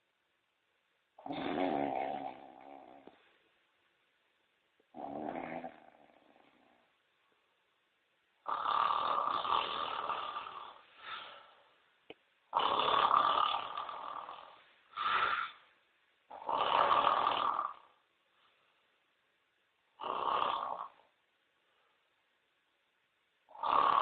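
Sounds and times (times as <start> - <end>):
man snoring: 1.2 - 3.2, 5.0 - 6.8, 8.5 - 10.8, 12.5 - 15.6, 16.3 - 17.9, 20.0 - 21.0, 23.5 - 24.0
snort-like breath: 8.5 - 11.7, 12.6 - 15.7, 16.3 - 17.8.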